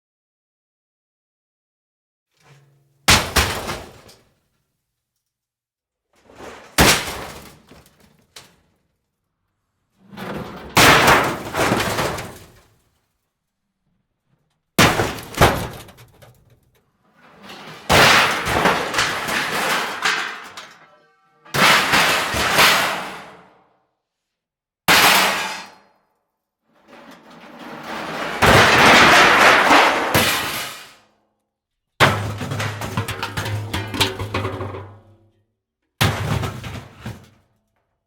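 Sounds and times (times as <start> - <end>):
metal hits: 2.4 - 4.2
metal crashing and clattering: 2.4 - 4.3, 6.2 - 8.6, 10.1 - 12.7, 14.8 - 23.5, 24.9 - 25.8, 26.9 - 31.0, 32.0 - 35.1, 36.0 - 37.4.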